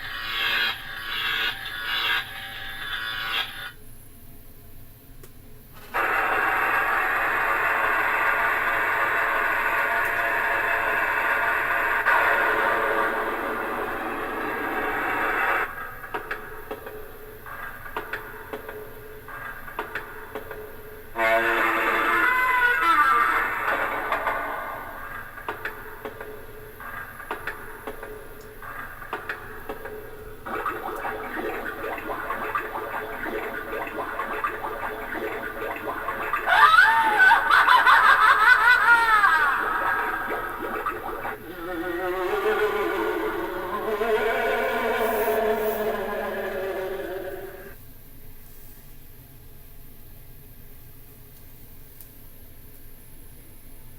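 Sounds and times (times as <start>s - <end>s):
toy speaker noisy rush: 0.0s - 3.7s, 5.9s - 16.3s, 21.2s - 47.8s
wavering electronic tones: 21.4s - 37.6s, 39.6s - 47.8s
recorded cackling laugh: 35.4s - 47.8s.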